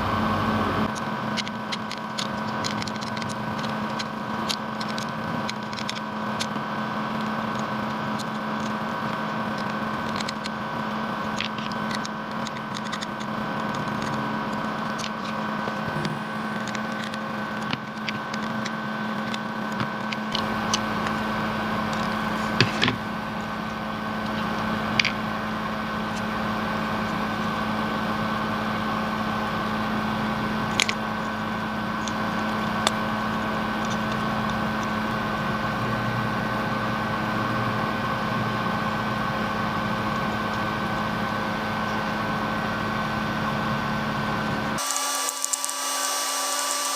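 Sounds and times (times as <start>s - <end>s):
steady hum: 0.0s - 46.9s
small plastic clicks and taps: 30.7s - 31.0s.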